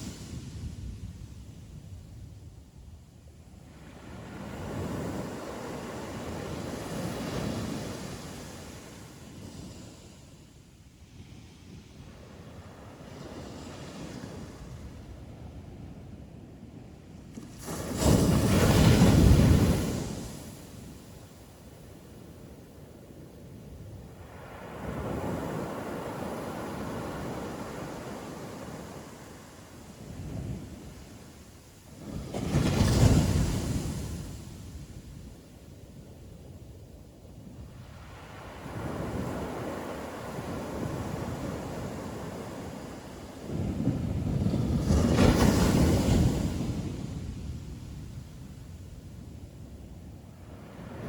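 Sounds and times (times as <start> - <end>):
ocean waves breaking on a beach: 0.0 - 51.0
ocean waves breaking: 24.2 - 29.9, 50.4 - 51.0.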